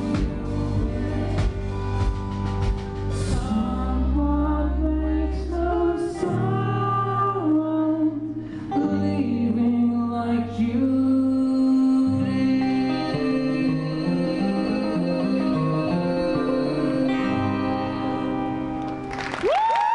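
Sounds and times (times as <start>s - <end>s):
person singing: 0.0s - 2.1s, 3.1s - 18.5s
live rock band playing: 0.0s - 4.2s.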